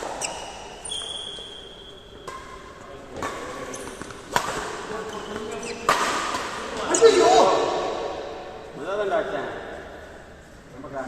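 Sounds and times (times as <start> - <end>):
rackets hitting shuttlecock: 0.0 - 8.5.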